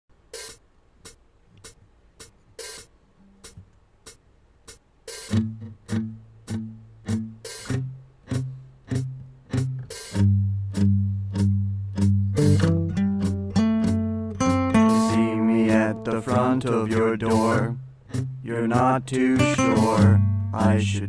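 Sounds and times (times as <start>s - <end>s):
plucked low guitar notes: 5.3s - 21.0s.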